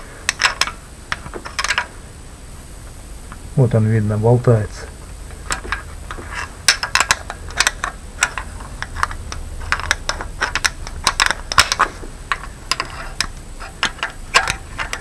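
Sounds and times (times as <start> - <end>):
metallic clicking of rocker arm: 5.5 - 15.0.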